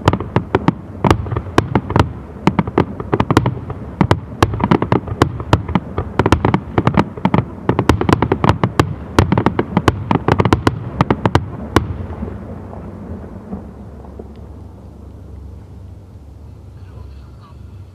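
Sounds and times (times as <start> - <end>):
distant firework bursts: 0.0 - 17.9
echoing rumble: 0.0 - 17.9.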